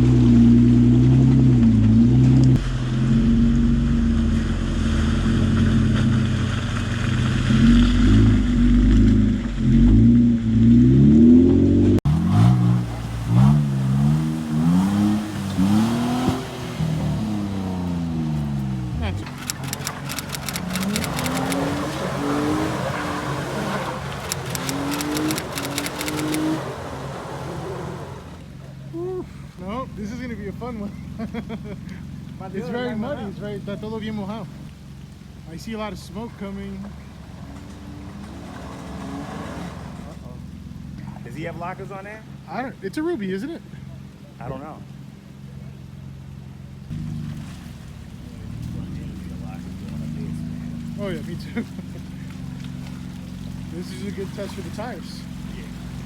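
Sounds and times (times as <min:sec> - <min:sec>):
off-road engine revving: 0:00.0 - 0:56.0
tyre and mud hiss: 0:12.1 - 0:56.0.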